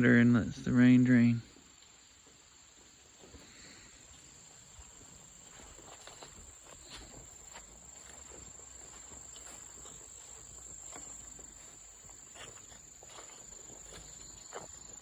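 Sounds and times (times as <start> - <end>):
insects trilling: 0.0 - 15.0
footstep scuffs and clicks: 4.8 - 15.0.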